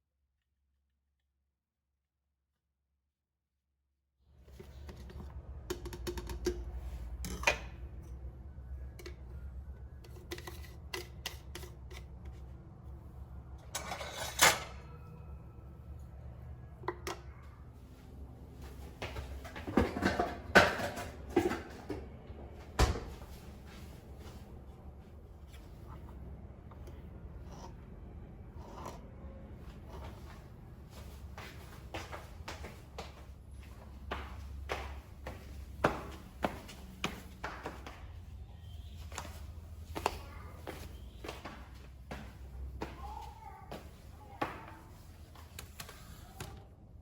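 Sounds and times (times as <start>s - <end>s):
small objects clicking and tapping: 5.6s - 7.6s.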